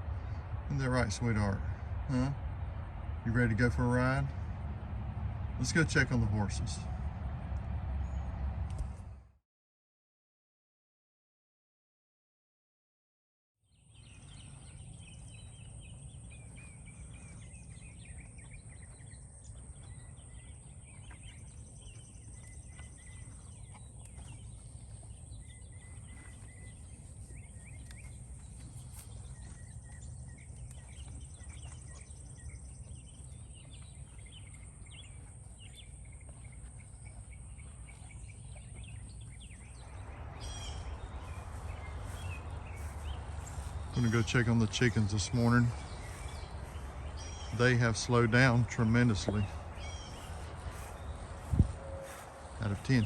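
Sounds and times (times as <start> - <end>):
low rumble: 0.0 - 9.4, 14.0 - 53.0
birds chirping and calling: 13.8 - 53.0.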